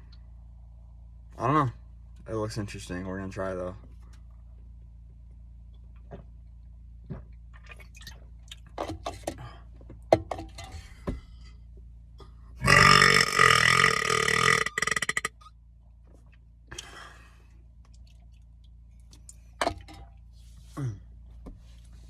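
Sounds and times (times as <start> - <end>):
man burping: 12.6 - 15.4.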